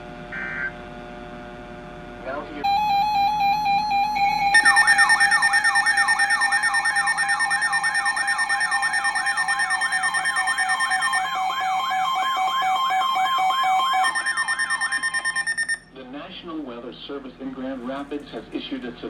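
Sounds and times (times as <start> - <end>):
falling siren sweep: 2.7 - 15.8
steady held tones: 2.7 - 15.8.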